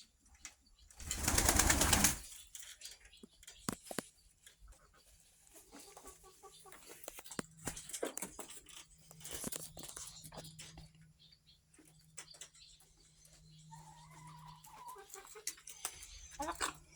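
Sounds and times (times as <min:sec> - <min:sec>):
chickens clucking: 0:00.4 - 0:16.9
small clicks and scratches: 0:02.6 - 0:04.8, 0:06.8 - 0:11.1.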